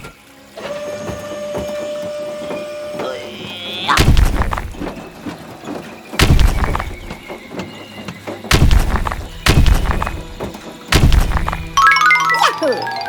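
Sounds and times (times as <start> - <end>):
heavy crashing thuds: 3.9 - 5.3, 6.1 - 7.4, 8.5 - 11.8
background music: 8.7 - 13.0.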